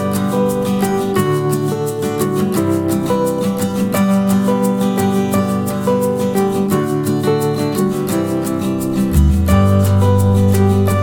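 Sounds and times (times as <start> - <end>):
strummed acoustic guitar: 0.0 - 11.0.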